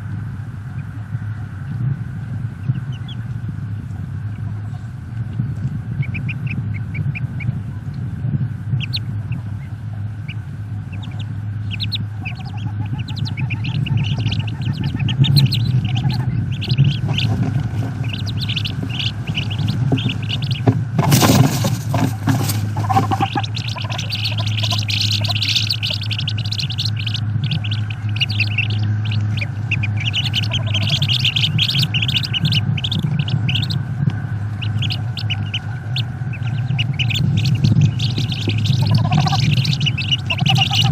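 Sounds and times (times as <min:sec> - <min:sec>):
ducklings peeping: 0:00.0 - 0:40.9
low electrical hum: 0:00.0 - 0:40.9
loud rushing noise: 0:10.1 - 0:40.9.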